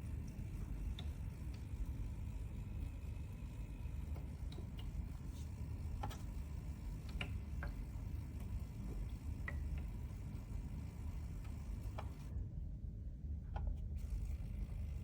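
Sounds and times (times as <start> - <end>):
humidifier humming: 0.0 - 15.0
faint irregular ticks: 3.8 - 10.1.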